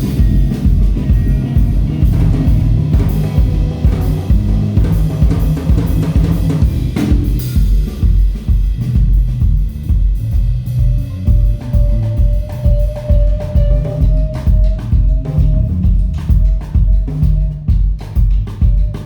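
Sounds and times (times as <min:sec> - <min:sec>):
bass drum and snare hits: 0:00.0 - 0:19.0
bass line: 0:00.0 - 0:19.0
rock band music: 0:00.0 - 0:19.0.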